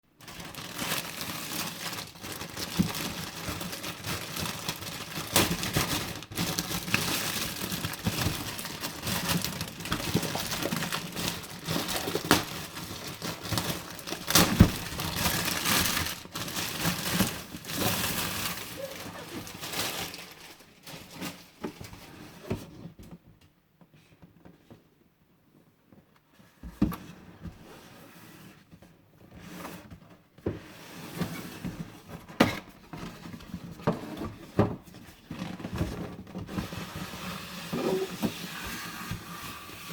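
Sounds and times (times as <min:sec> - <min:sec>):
packaging crinkling and rustling: 0:00.1 - 0:22.5.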